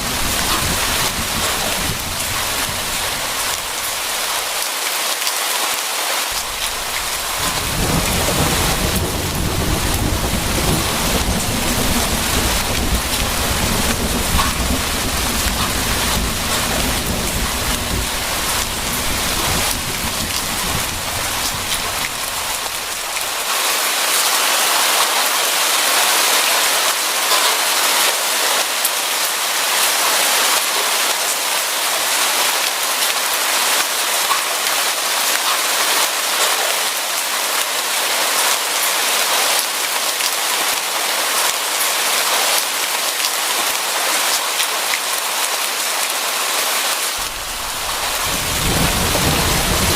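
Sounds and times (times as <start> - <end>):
low thunder rumble: 0.0 - 4.4, 6.4 - 23.3, 47.2 - 49.9
heavy rain falling: 0.0 - 49.9.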